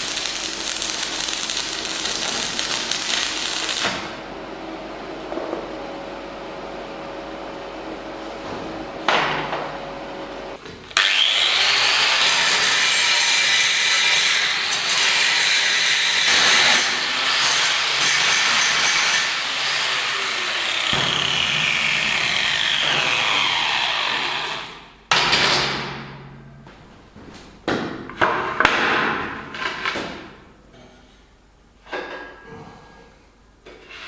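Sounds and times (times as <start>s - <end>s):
power tool running loudly: 9.0s - 24.9s.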